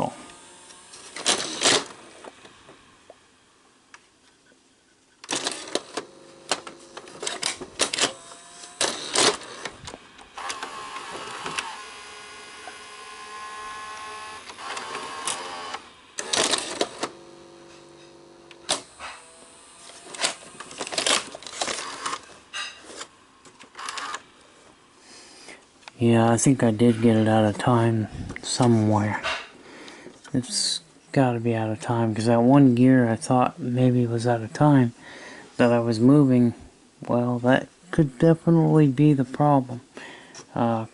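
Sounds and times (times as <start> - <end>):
loading motor whirring: 0.0 - 4.0, 5.2 - 26.0
gears clicking and clacking: 0.3 - 2.3, 5.2 - 11.9, 18.5 - 22.3.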